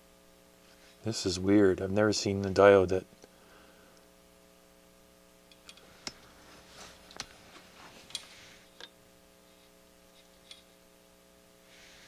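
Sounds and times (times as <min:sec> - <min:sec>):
faint steady hum: 0:00.0 - 0:12.0.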